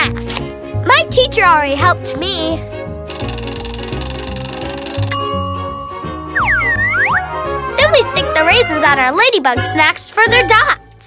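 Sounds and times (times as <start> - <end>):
playful background music: 0.0 - 11.0
bell-like ringing trill: 3.2 - 7.3
sustained ding: 4.9 - 7.3.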